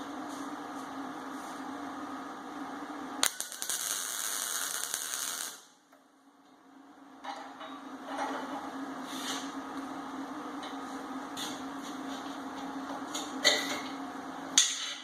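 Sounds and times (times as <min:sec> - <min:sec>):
steady low hum: 0:00.0 - 0:14.8
welding arc crackling: 0:03.2 - 0:05.8.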